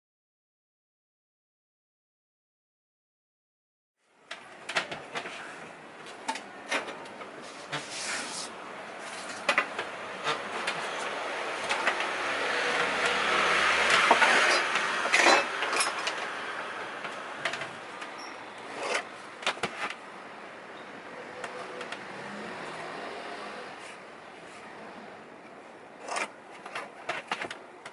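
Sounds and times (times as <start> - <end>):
vehicle passing by: 9.9 - 19.4, 21.0 - 25.4.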